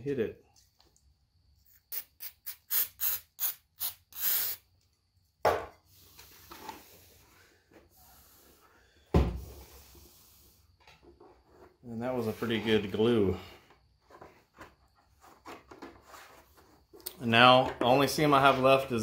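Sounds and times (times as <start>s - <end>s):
spray bottle spritzing: 1.8s - 4.6s.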